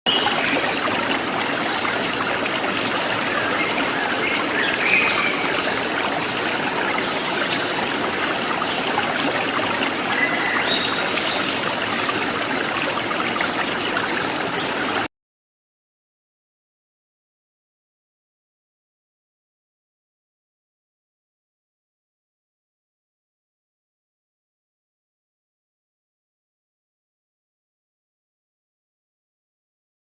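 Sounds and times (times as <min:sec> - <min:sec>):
water running: 0:00.1 - 0:15.1.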